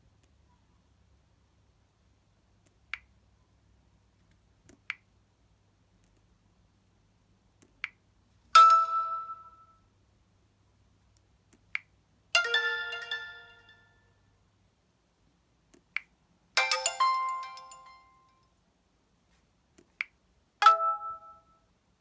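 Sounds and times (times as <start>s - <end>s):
phone ringtone chiming chord: 8.6s - 9.7s, 12.4s - 14.0s, 16.6s - 18.3s, 20.6s - 21.5s.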